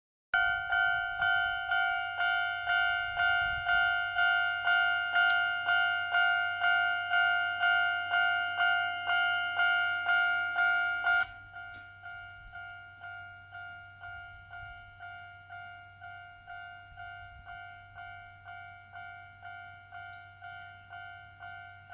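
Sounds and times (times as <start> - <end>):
level-crossing alarm dinging: 0.4 - 21.9.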